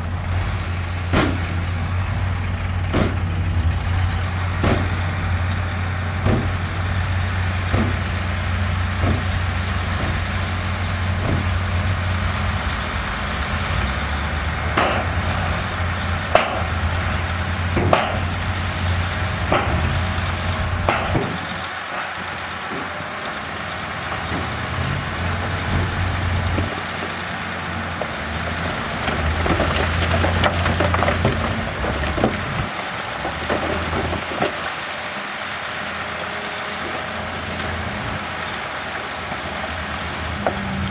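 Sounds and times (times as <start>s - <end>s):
rattling: 0.0s - 27.2s
diesel machinery engine running: 0.0s - 40.9s
metallic knocks and clanks: 0.3s - 12.6s, 14.7s - 23.2s.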